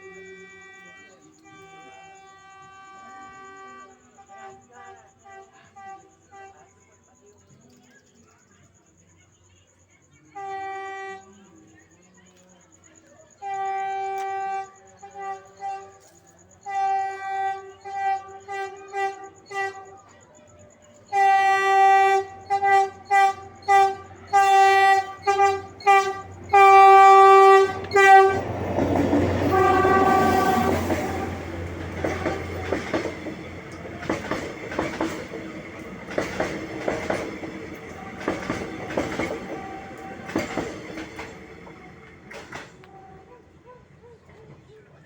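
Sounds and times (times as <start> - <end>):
train horn blasts: 0.0 - 6.9, 10.3 - 11.6, 13.4 - 43.6
train rumbling past: 13.4 - 45.0
wheels clacking over rail joints: 21.2 - 43.1.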